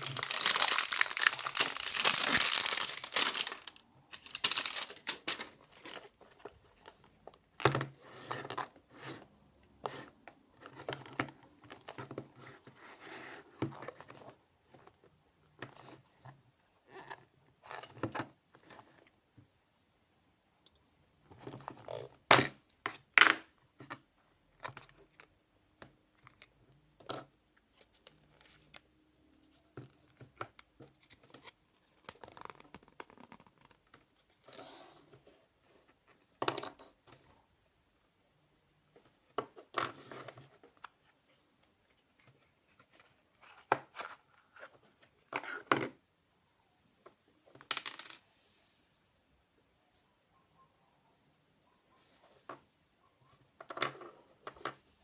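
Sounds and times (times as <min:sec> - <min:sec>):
packaging tearing or crinkling: 0:00.0 - 0:06.0
packaging clicks taps and rustles: 0:00.0 - 0:07.0.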